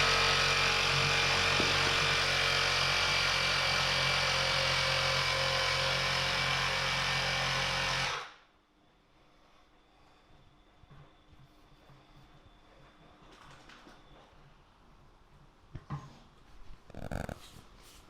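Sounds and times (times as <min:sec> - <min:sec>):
electric air pump running: 0:00.0 - 0:08.4.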